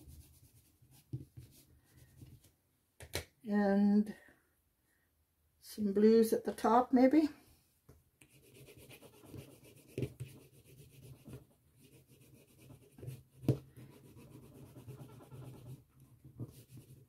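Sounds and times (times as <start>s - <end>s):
pastel rubbing on paper: 0.0s - 2.3s, 8.2s - 17.0s.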